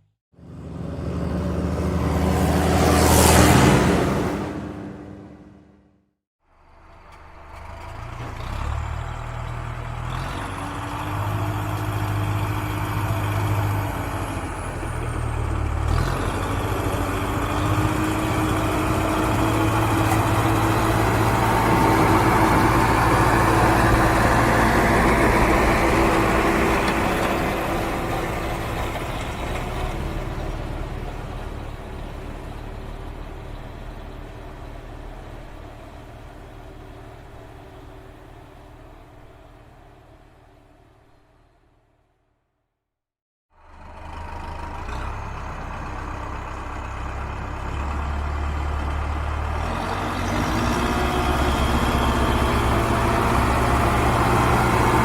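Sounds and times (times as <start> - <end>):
tractor engine running: 6.5 - 41.6, 43.6 - 55.0.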